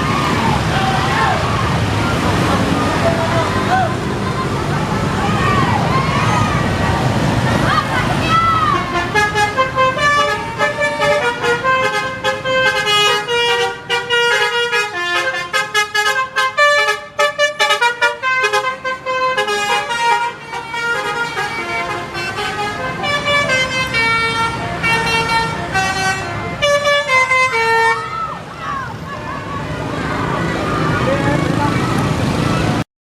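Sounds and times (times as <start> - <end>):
multi-tone bus air horn melody: 8.7 - 28.2.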